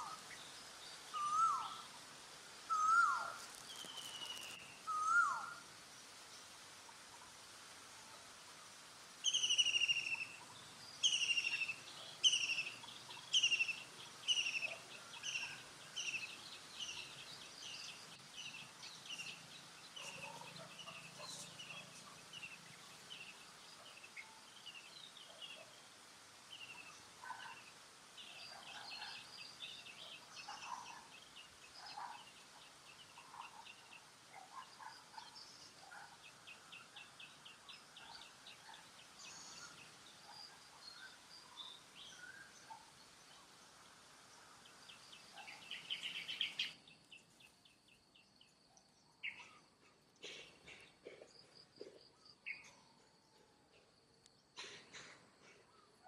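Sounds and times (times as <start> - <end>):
soft chirps: 2.7 - 5.4.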